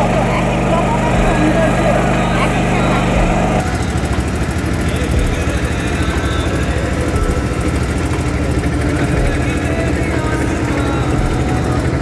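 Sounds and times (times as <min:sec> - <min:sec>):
motorboat engine chugging: 0:00.0 - 0:12.0.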